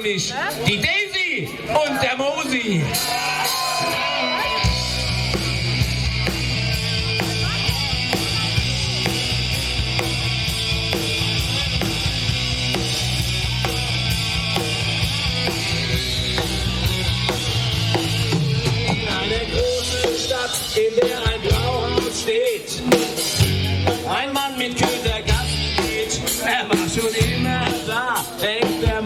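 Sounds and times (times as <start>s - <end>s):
punk rock band playing: 2.8s - 29.0s.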